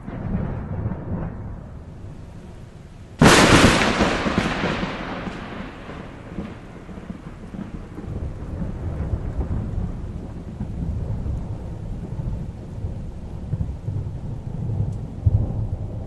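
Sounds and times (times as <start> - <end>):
steady rain: 0.0 - 16.0
thunder rumbling: 0.0 - 16.0.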